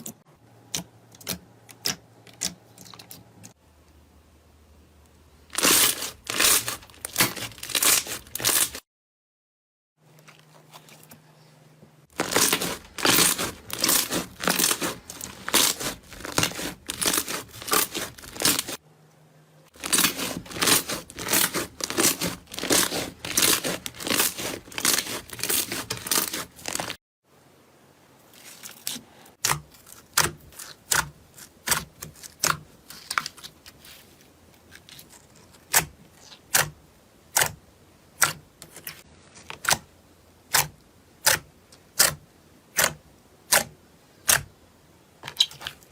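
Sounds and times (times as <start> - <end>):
slime crackling and popping: 5.5 - 8.8, 12.1 - 18.8, 19.8 - 27.0.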